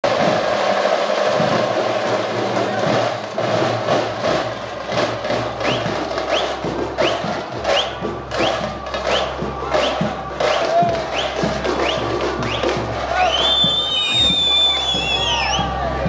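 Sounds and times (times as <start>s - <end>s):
frame drums beaten with sticks: 0.0s - 16.0s
short rising whistles: 13.2s - 15.8s.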